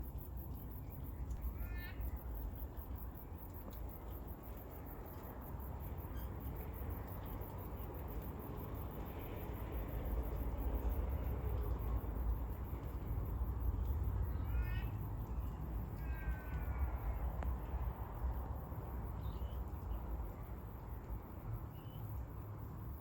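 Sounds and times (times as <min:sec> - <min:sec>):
insects chirping: 0:00.0 - 0:23.0.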